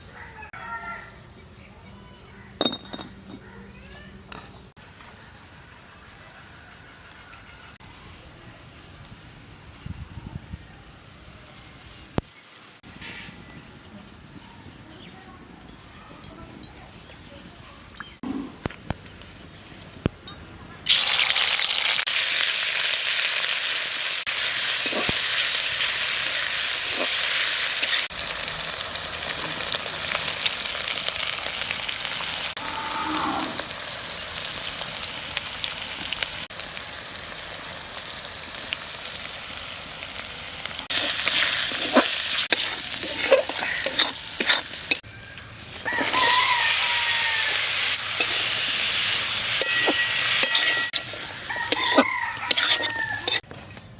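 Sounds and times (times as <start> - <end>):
food sizzling in hot oil: 20.9 - 53.4.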